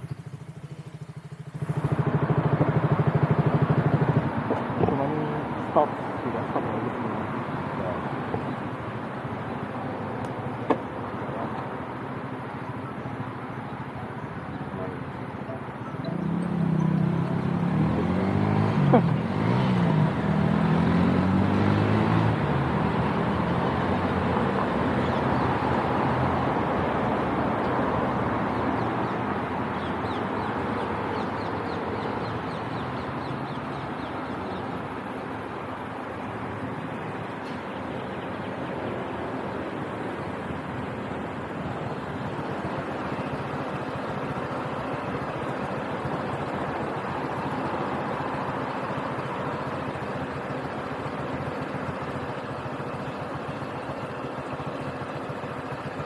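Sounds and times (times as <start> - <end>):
motorcycle engine: 0.0 - 56.0
road noise: 0.0 - 56.0.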